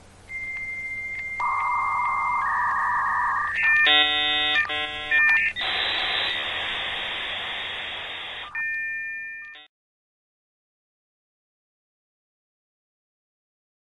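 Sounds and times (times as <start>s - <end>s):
modem hissing noise: 0.2s - 8.7s
modem tones: 0.3s - 9.7s.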